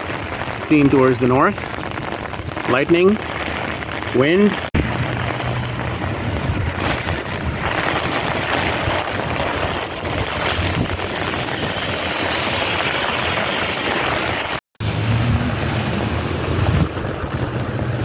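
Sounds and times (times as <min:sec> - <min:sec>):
heavy rain pouring: 0:00.0 - 0:18.0
wind gusting on microphone: 0:00.0 - 0:18.0
low rumble: 0:04.8 - 0:08.0.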